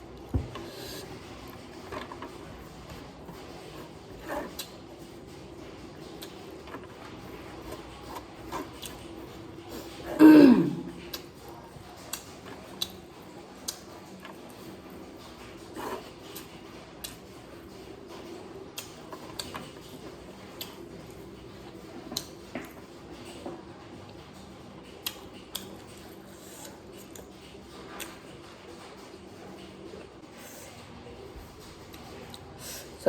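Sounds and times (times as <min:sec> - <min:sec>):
short throat sound: 0:10.0 - 0:11.2.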